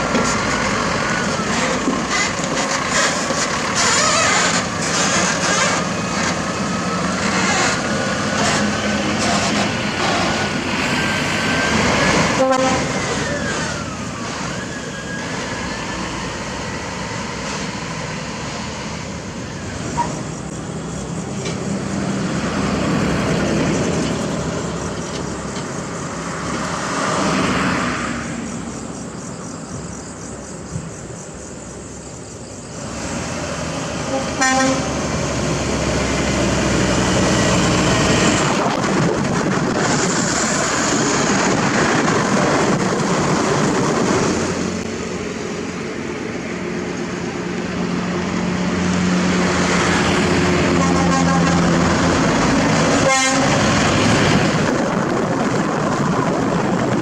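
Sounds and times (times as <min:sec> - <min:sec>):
heavy diesel vehicle running: 0:00.0 - 0:57.0
high squeals and rattles: 0:01.5 - 0:06.4.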